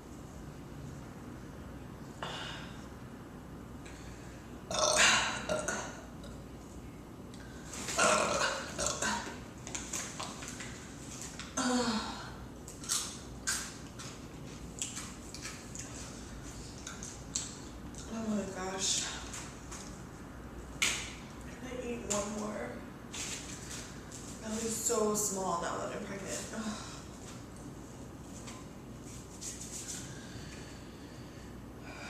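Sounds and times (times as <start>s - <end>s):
woman burping: 4.7s - 6.1s, 8.0s - 9.4s.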